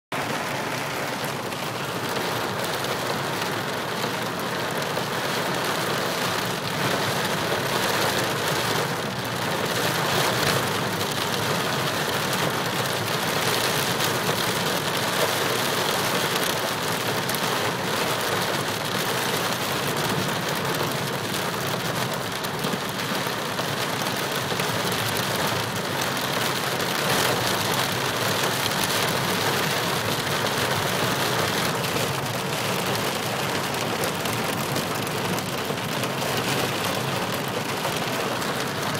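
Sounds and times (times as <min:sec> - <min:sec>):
heavy rain pouring: 0:00.1 - 0:38.9.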